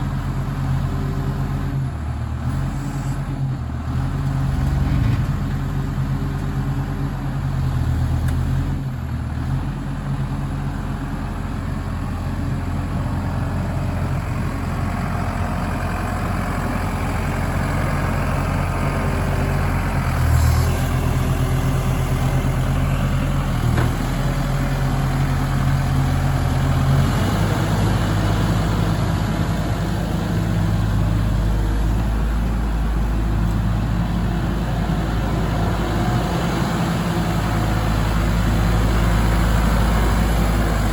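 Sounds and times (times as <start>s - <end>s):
excavator diesel engine running: 0.0s - 40.9s.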